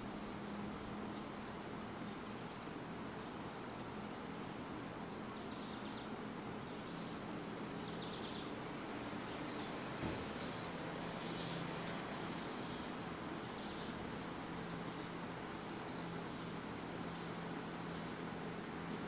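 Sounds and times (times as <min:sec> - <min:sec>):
box fan running: 0:06.1 - 0:19.0.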